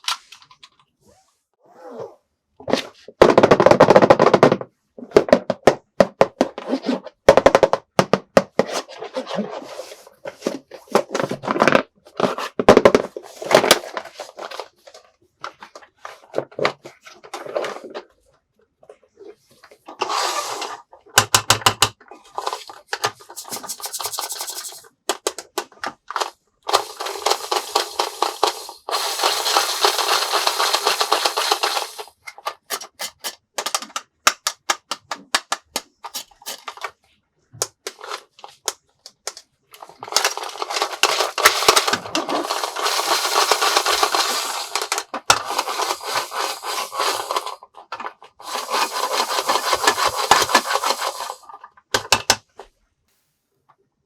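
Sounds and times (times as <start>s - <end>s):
plastic toy pieces clicking: 21.2s - 36.9s, 37.6s - 52.4s.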